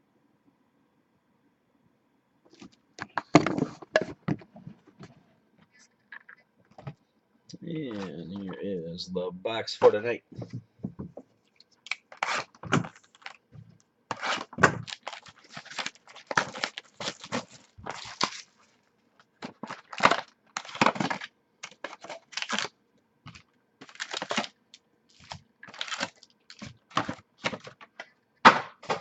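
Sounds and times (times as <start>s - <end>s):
card box ripping and crinkling: 11.9s - 13.4s, 14.1s - 18.6s, 19.4s - 22.7s, 23.3s - 27.8s.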